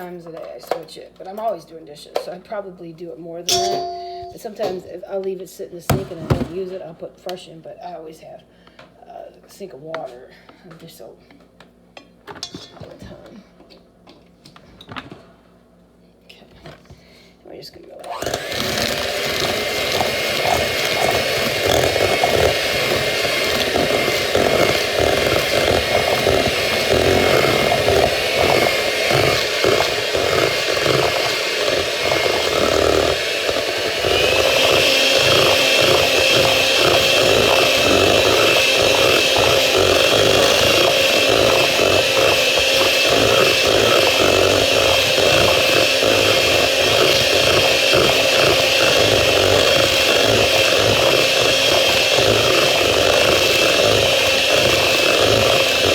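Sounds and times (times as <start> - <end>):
electric hand mixer whining: 18.0 - 55.9.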